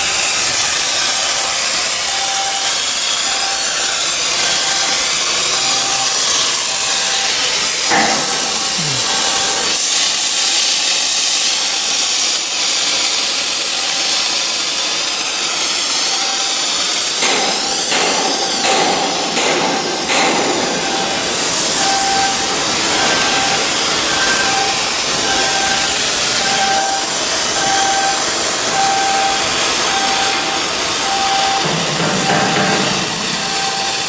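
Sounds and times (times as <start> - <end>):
loud hissing noise: 0.0 - 34.0
short repeated tones: 20.8 - 34.0.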